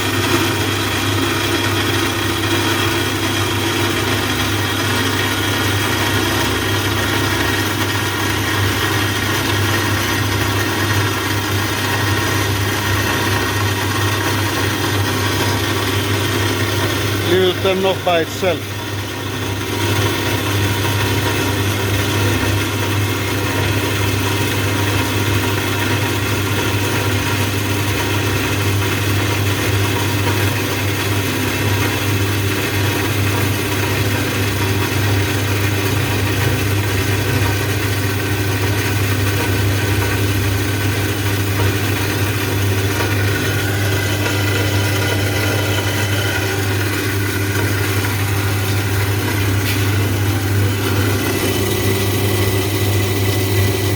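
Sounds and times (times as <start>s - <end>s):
machine tool humming: 0.0s - 23.8s, 40.8s - 53.9s.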